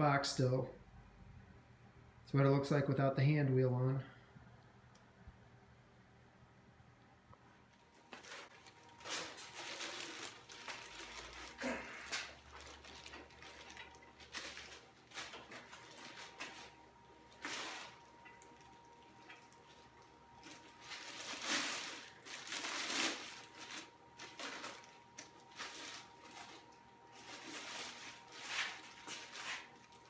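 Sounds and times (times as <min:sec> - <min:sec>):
packaging rustling and scraping: 0:07.8 - 0:30.0.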